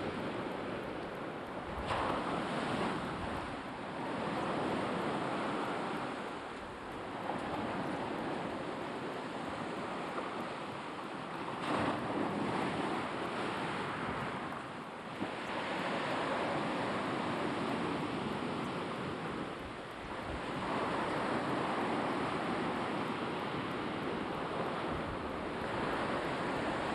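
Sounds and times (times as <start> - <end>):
sea waves breaking on shore: 0.0 - 26.9
wind noise on microphone: 0.0 - 26.9.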